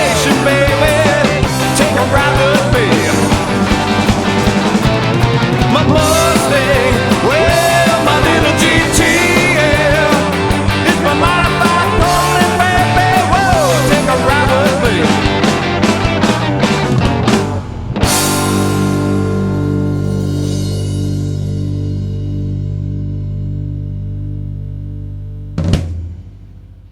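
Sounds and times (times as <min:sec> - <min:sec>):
steady drum beat: 0:00.0 - 0:21.1
lead guitar line bending in pitch: 0:00.0 - 0:25.6
bass: 0:00.0 - 0:26.9.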